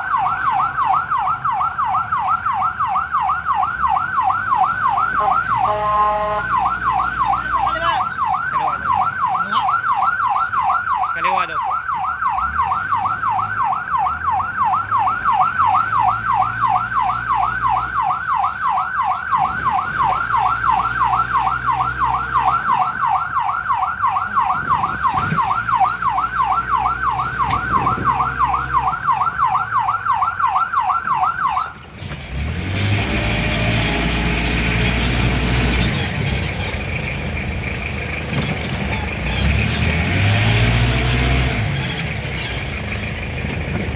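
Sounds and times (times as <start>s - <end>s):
electronic siren yelping: 0.0s - 31.8s
road noise: 0.0s - 43.9s
vehicle engine rumble: 0.0s - 43.9s.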